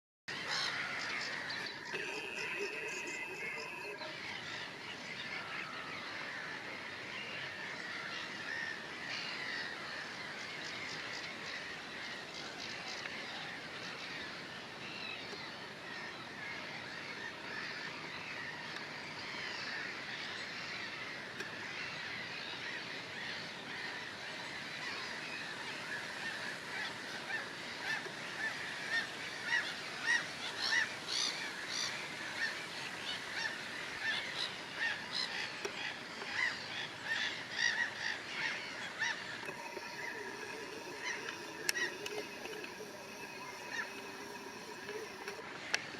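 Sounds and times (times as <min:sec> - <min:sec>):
gulls calling: 0:00.3 - 0:07.6, 0:33.2 - 0:45.9.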